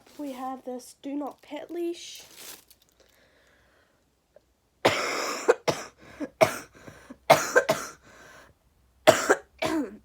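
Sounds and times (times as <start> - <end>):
person coughing: 4.9 - 8.0, 9.1 - 10.0.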